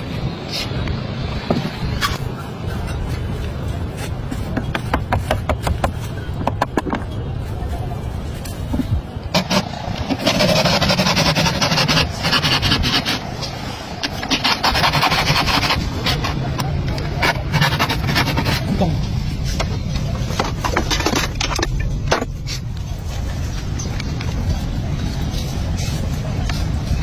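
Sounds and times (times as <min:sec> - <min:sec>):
knocks and clicks: 0:04.2 - 0:07.3
hand tool rasping on wood: 0:09.4 - 0:13.3, 0:14.1 - 0:16.4.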